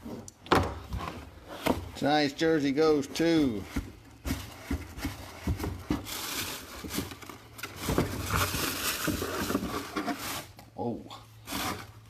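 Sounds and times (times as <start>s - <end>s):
packaging rustling and scraping: 0.0s - 10.6s, 11.4s - 12.0s
packaging taps and knocks: 3.6s - 6.2s.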